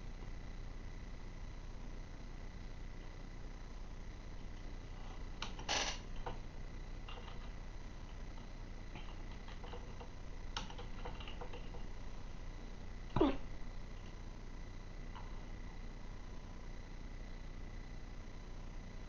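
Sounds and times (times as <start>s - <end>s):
person hiccuping: 13.1s - 13.5s.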